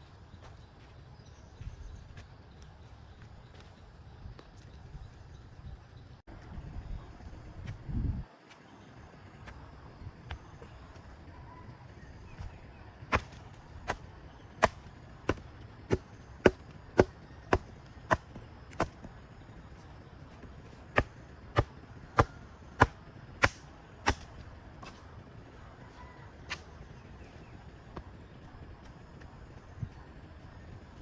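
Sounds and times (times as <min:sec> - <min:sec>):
hand tool striking: 0:21.0 - 0:25.0.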